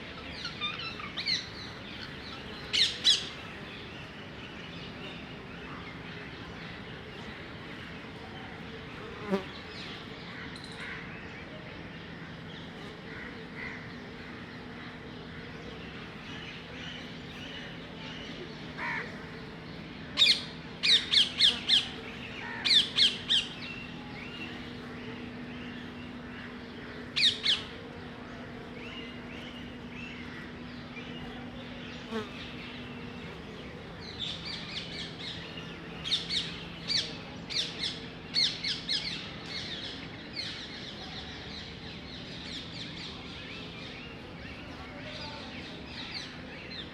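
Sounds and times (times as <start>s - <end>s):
bees buzzing: 7.2s - 9.7s, 20.6s - 36.9s.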